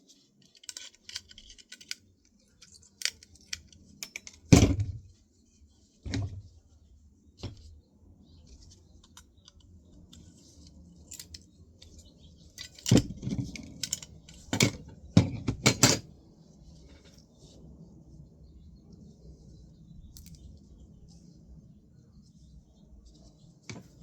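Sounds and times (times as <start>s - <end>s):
metal parts and tools clinking: 0.4s - 5.0s, 11.1s - 12.0s, 12.6s - 16.1s, 20.2s - 20.4s.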